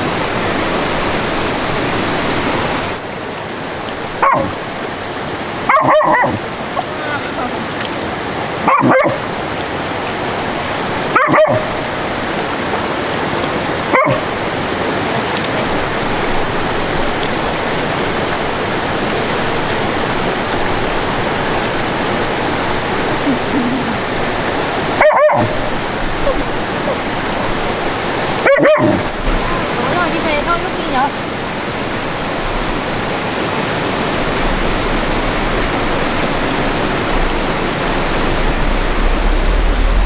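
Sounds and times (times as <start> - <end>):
stream water rushing: 0.0 - 40.0
dog barking: 4.2 - 4.6, 5.6 - 6.4, 8.6 - 9.3, 11.1 - 11.8, 13.9 - 14.3, 25.0 - 27.0, 28.4 - 29.1.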